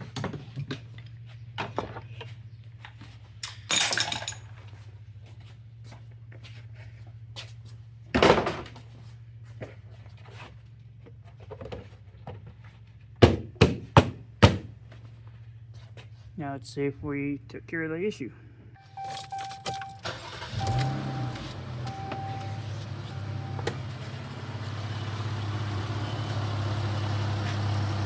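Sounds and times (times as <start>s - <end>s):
tools clunking in engine bay: 18.8s - 24.0s.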